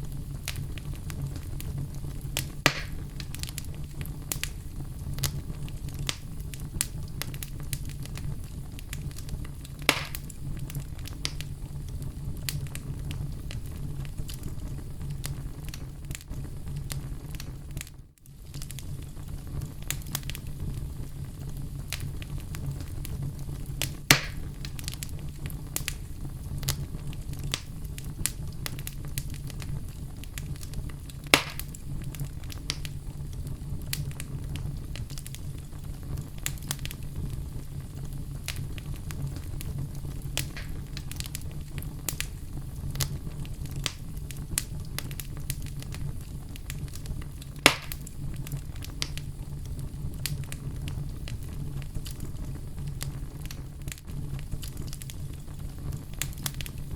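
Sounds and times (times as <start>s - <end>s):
wood fire rumbling and crackling: 0.0s - 56.9s
sharp pops: 2.6s - 3.0s, 9.9s - 10.3s, 24.1s - 24.5s, 31.4s - 31.8s, 40.4s - 40.8s, 47.6s - 48.0s.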